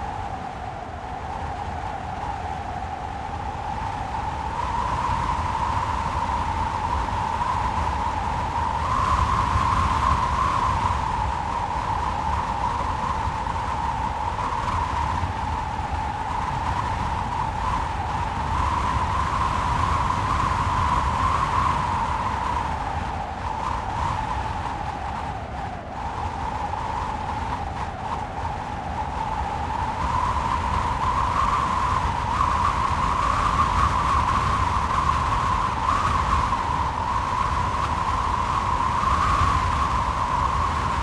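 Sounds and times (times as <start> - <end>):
wind blowing with whistling tone: 0.0 - 41.0.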